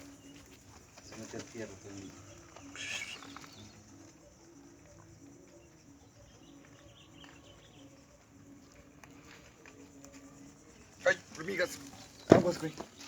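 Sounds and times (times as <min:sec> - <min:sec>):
faint outdoor ambience: 0:00.0 - 0:13.0
low bird call: 0:02.1 - 0:04.1.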